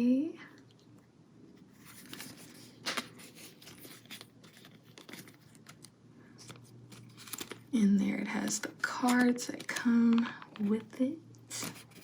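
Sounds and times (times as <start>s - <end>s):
paper packaging crinkling: 1.8s - 7.7s.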